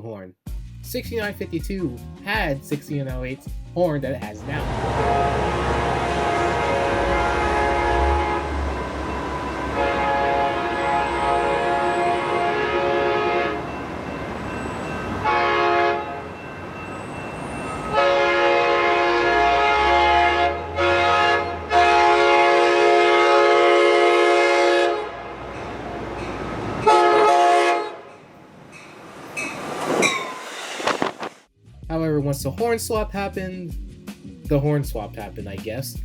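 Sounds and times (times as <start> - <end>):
train running noise: 4.3 - 31.5
train horn blasts: 4.4 - 16.5, 17.4 - 28.2.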